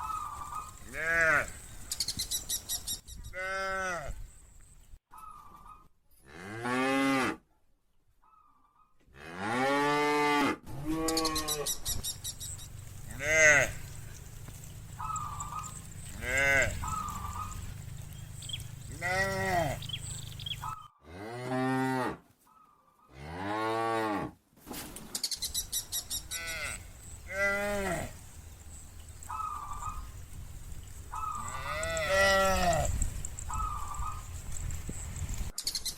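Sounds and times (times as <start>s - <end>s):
cows mooing: 0.3s - 1.7s, 12.6s - 22.2s, 26.2s - 30.2s, 31.2s - 34.3s.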